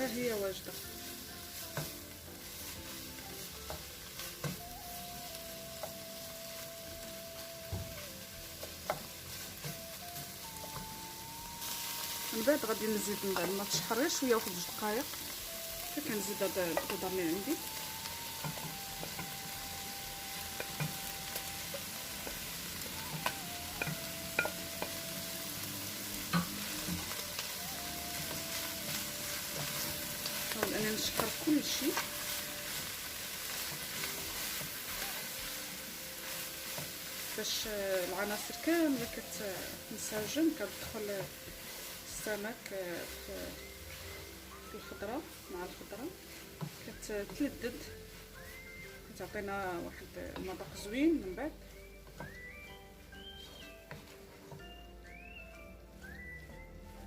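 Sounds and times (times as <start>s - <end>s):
food sizzling in a pan: 0.0s - 57.0s
utensil clicking against pan: 23.1s - 25.0s.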